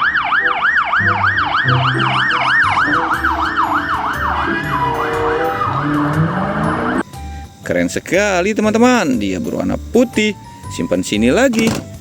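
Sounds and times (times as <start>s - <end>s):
toy police car siren wailing: 0.0s - 7.0s
low electronic notes: 0.0s - 7.1s.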